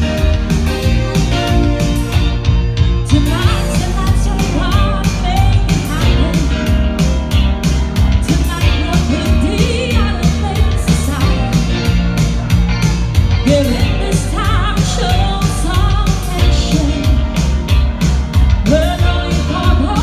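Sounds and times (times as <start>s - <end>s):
bass line: 0.0s - 20.0s
live rock band: 0.0s - 20.0s
person singing: 3.1s - 7.1s, 8.2s - 20.0s.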